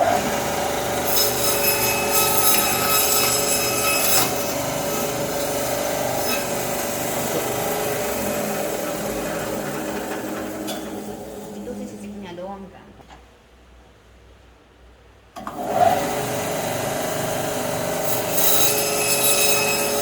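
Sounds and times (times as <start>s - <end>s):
band saw running: 0.0s - 12.1s, 15.4s - 20.0s
saw blade cutting through meat: 0.3s - 8.5s, 18.0s - 20.0s.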